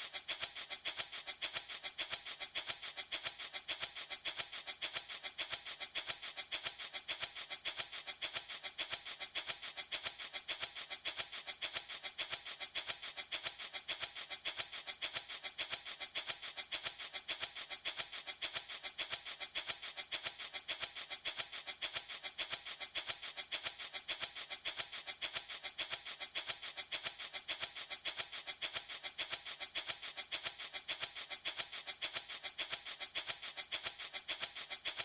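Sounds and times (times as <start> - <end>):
baby rattle shaken: 0.0 - 35.0.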